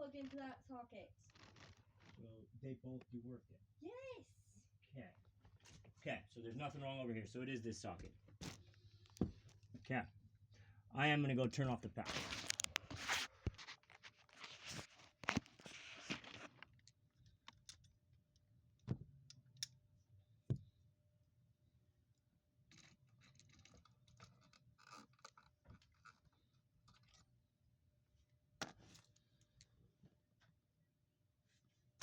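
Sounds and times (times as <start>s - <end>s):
rustling handling noise: 12.0s - 16.8s.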